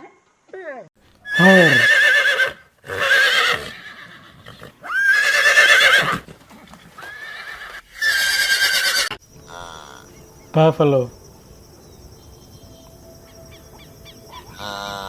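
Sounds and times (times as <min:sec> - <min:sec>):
horse whinnying: 0:01.2 - 0:10.0.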